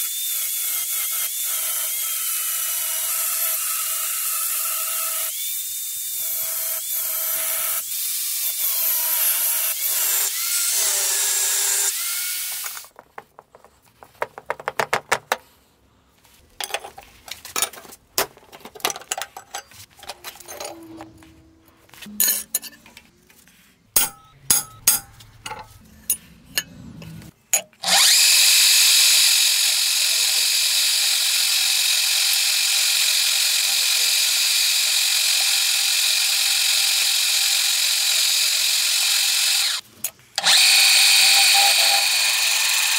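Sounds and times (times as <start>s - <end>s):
power tool running: 0.0s - 12.9s, 27.0s - 39.8s, 40.4s - 42.9s
clicks and knocks from handling parts: 16.6s - 21.1s.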